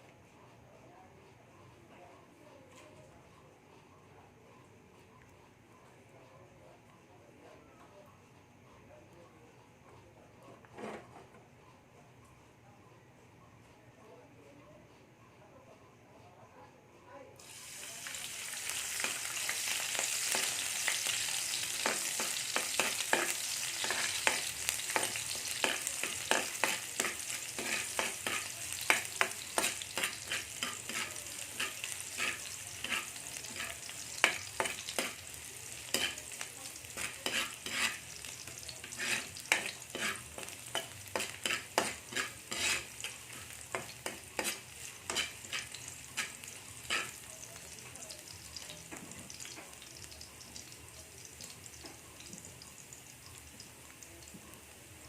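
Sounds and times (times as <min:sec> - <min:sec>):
squid sizzling in a pan: 0:17.4 - 0:55.0
utensil scraping against pan: 0:21.6 - 0:47.3.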